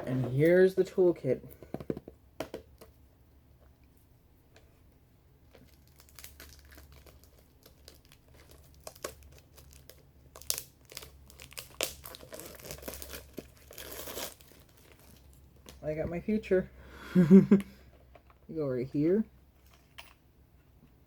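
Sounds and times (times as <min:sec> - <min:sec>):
packaging crinkling and tearing: 0:05.5 - 0:15.8.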